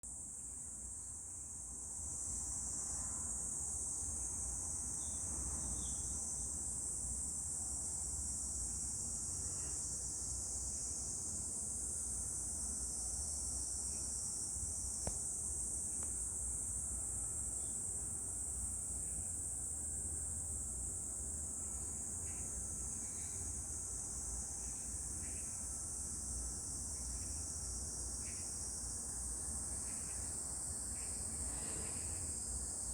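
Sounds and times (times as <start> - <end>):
high-pitched insect chorus: 0.1 - 32.9.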